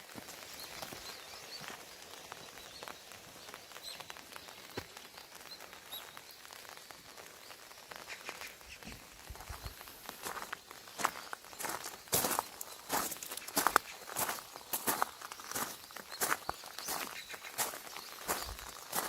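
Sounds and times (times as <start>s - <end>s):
footsteps outdoors: 0.0s - 19.0s
bird chirps: 0.6s - 6.5s, 7.4s - 19.0s.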